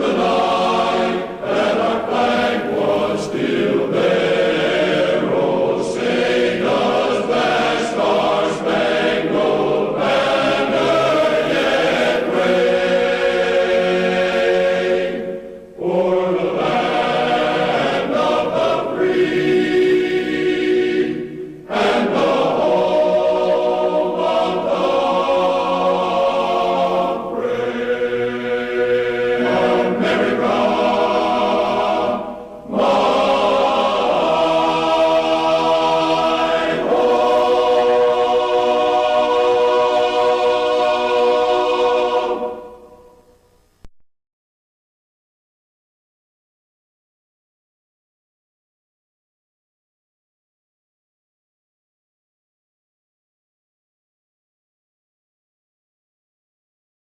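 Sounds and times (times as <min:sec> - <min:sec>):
choir singing sustained chords: 0:00.0 - 0:43.7.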